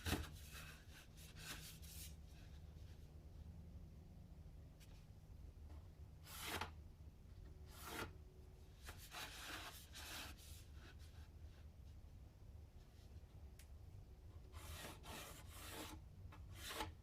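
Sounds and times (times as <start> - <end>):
pen drawing lines: 14.5 - 17.0.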